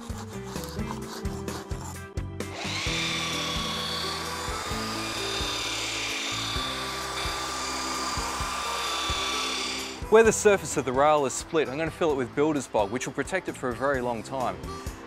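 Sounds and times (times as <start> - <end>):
scraper scraping paint off wood: 0.0 - 2.1
background music: 0.0 - 15.0
belt sander whining: 0.2 - 10.8.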